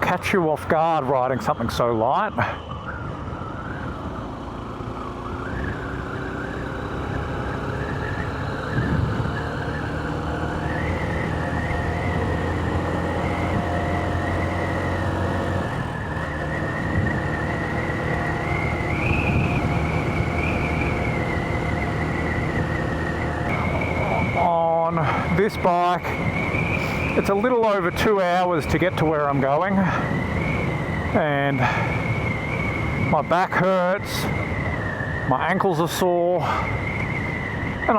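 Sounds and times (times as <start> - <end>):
motorcycle engine running: 4.2 - 24.4
high wind whistle: 7.8 - 37.9.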